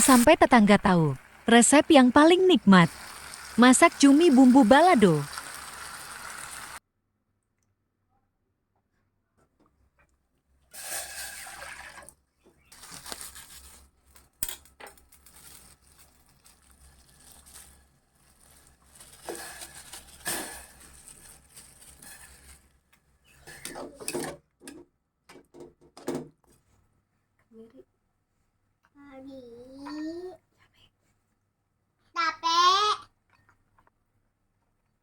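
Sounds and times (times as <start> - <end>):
water running from a tap: 2.3 - 6.8, 11.3 - 12.1.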